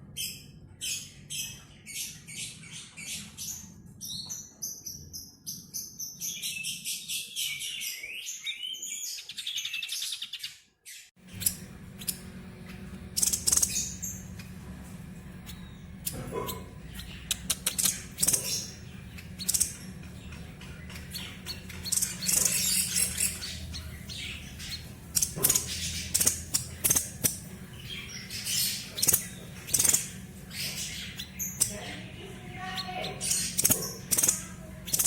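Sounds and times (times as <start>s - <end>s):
songbird chirping: 0.0s - 35.0s
steady low hum: 11.2s - 35.0s.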